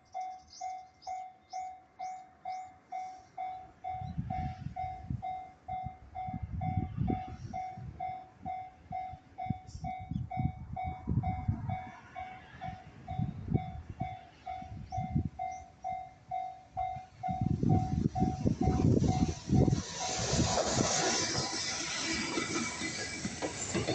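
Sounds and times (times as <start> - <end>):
level crossing warning bell: 0.0 - 19.8
train wheels clattering over rail joints: 18.4 - 23.9.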